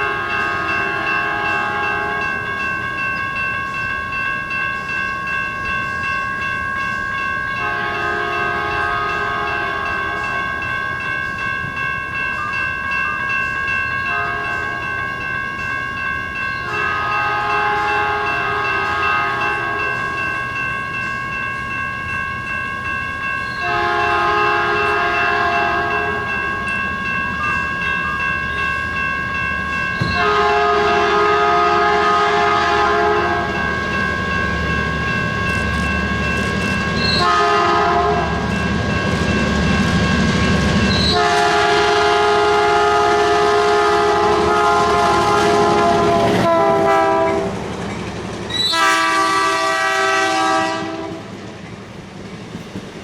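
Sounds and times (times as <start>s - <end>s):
locomotive horn blasts: 0.0s - 2.6s, 7.6s - 10.6s, 14.0s - 15.0s, 16.6s - 20.2s, 23.6s - 26.7s, 30.0s - 34.6s, 37.0s - 38.6s, 40.9s - 47.7s, 48.6s - 51.3s
passing train rumble: 0.0s - 53.0s
steady high tone: 8.7s - 41.2s.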